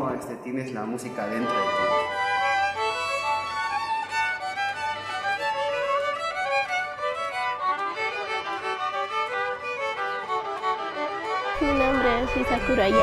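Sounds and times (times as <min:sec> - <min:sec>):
violin playing a melody: 0:01.4 - 0:13.0.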